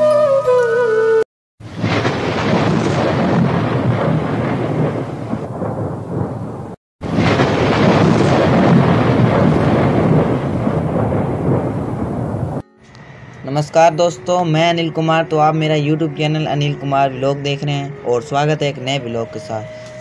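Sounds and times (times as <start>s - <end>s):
rain: 1.6s - 12.6s
thunder rumbling: 1.6s - 12.6s.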